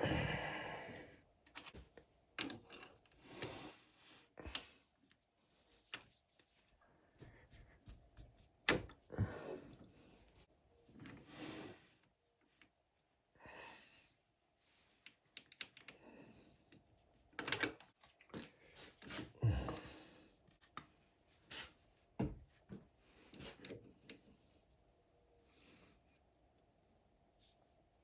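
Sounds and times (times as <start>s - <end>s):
small metal tools clicking: 15.1s - 16.0s.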